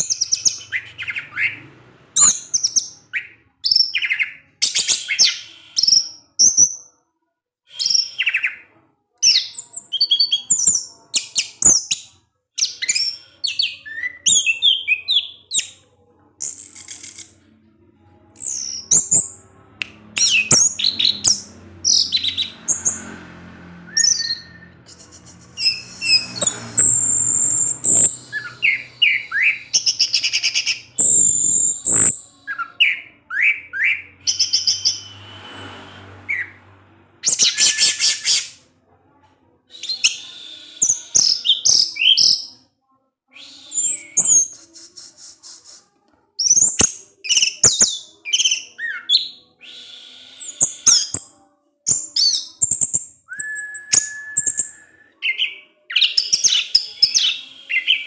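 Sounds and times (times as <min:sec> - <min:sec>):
thrush singing: 0:16.4 - 0:38.6.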